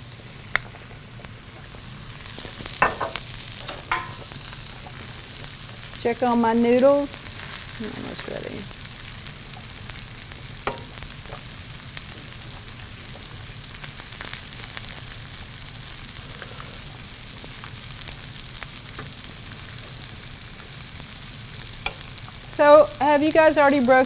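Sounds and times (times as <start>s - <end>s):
mushrooms sizzling in a pan: 0.0s - 24.0s.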